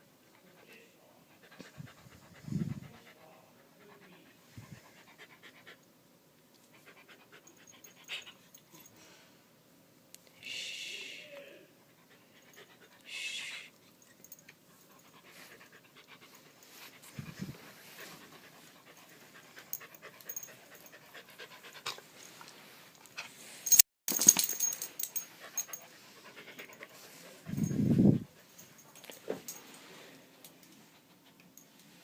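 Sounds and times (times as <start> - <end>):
dog panting rapidly: 0.4 - 5.8, 14.8 - 22.1, 25.2 - 28.6.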